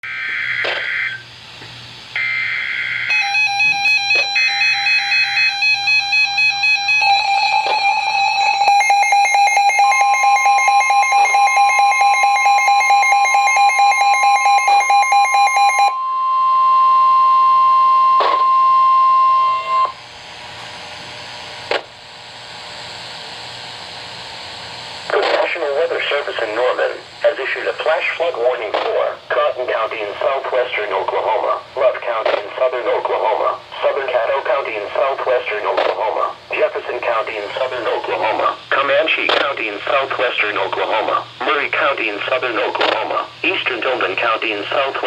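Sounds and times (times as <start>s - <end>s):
rapid pulsing alarm beeps: 0.0s - 1.3s, 2.2s - 20.0s
steady high alarm tone: 0.0s - 1.4s, 2.1s - 20.1s
warbling data tones: 2.2s - 20.0s
radio static hiss: 3.6s - 4.4s, 22.8s - 45.0s.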